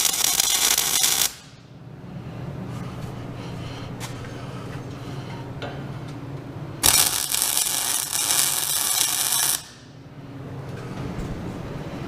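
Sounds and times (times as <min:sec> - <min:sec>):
welding arc crackling hiss: 0:00.0 - 0:01.6, 0:06.8 - 0:09.8
steady low hum: 0:00.0 - 0:12.0.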